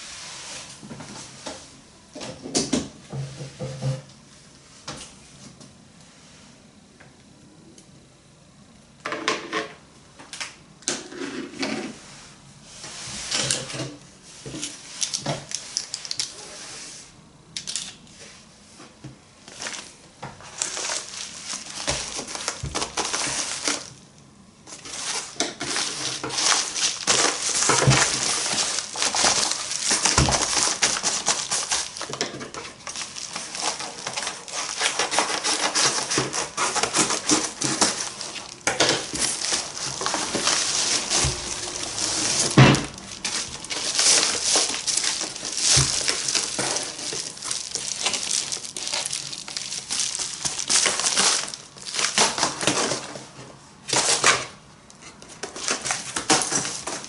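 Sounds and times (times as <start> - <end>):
packaging crinkling and rustling: 19.4 - 57.0.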